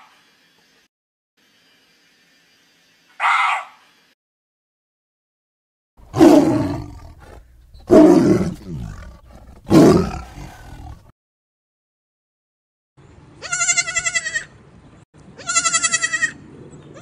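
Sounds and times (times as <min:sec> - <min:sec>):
big cat roaring: 0:06.0 - 0:11.1.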